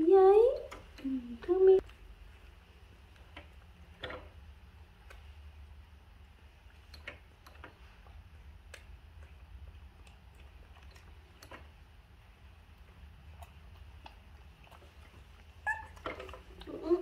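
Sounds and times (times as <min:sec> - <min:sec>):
light clicks and taps: 0:06.6 - 0:11.8.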